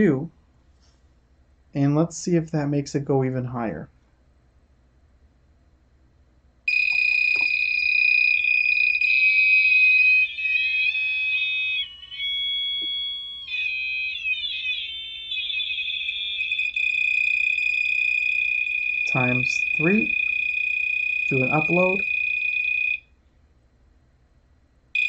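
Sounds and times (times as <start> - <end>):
buzzer high-pitched tone: 6.7 - 23.0.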